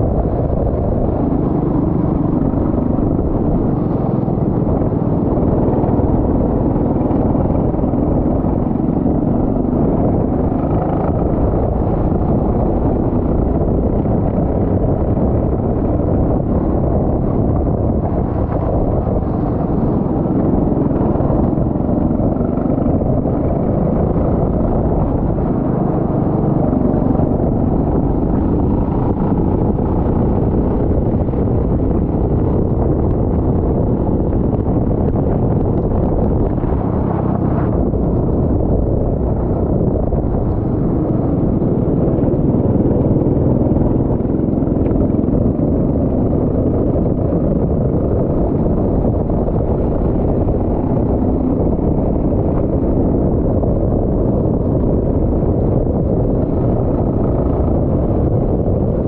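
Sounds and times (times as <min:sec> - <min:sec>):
go-kart engine running: 0:00.0 - 0:59.0.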